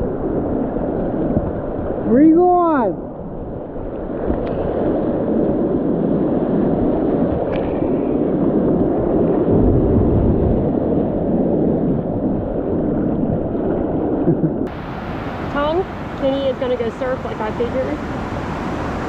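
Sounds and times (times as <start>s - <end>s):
short low rumble: 9.5s - 11.0s
whitewater rapids rushing: 14.7s - 19.0s.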